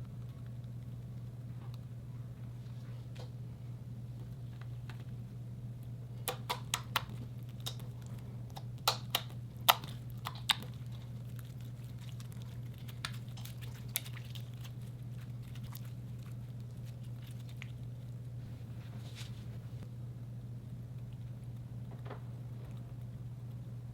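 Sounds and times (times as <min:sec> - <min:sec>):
steady low hum: 0:00.0 - 0:23.9
slime popping and clicking: 0:06.3 - 0:07.9, 0:08.5 - 0:10.9.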